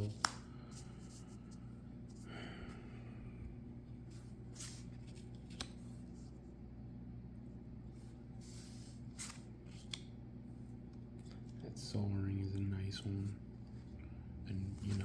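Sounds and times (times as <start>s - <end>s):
low electrical hum: 0.0s - 15.0s
cards rustling: 4.1s - 6.4s, 8.1s - 10.1s, 14.5s - 15.0s.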